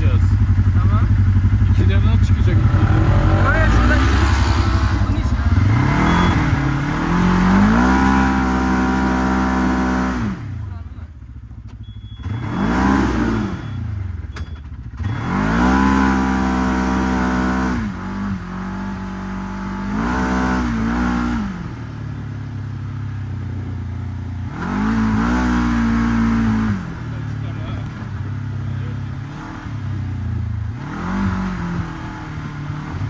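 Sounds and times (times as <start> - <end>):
vehicle engine revving: 0.0 - 33.0.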